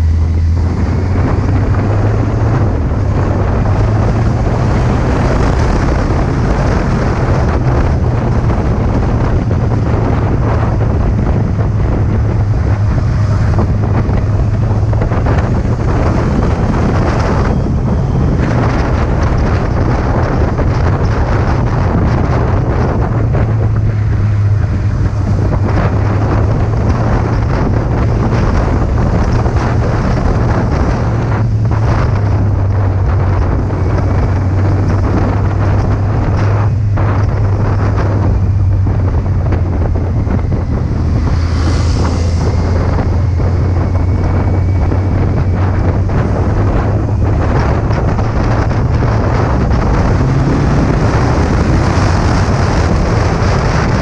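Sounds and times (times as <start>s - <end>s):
motorcycle engine humming: 0.0s - 54.0s
wind buffeting microphone: 0.0s - 54.0s.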